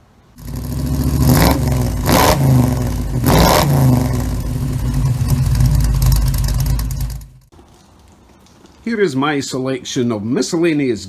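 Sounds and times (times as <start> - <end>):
car engine revving: 0.4 - 7.5.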